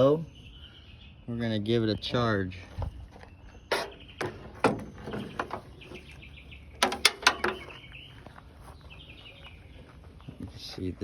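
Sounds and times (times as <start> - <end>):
bird chirping in trilled runs: 0.0 - 11.0
sharp clicks and knocks: 6.8 - 7.8.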